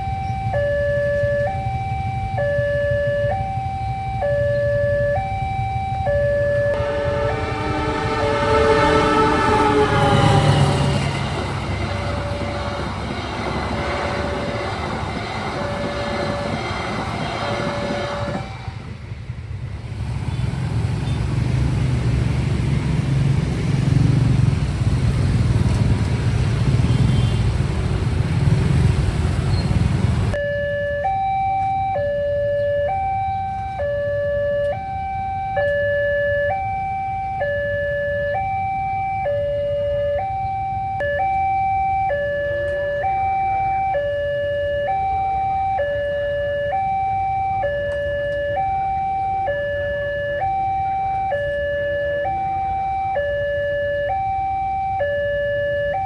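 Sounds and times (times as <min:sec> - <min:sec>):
level crossing two-tone alarm: 0:00.0 - 0:18.6, 0:30.3 - 0:56.0
passing train rumble: 0:00.0 - 0:30.4
train horn: 0:06.7 - 0:19.1.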